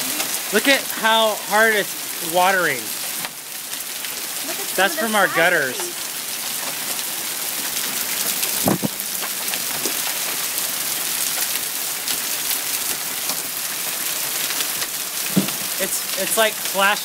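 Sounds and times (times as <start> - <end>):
heavy rain and hail: 0.0 - 17.0
water spilling from gutters: 0.0 - 17.0
dull thump: 15.3 - 15.6.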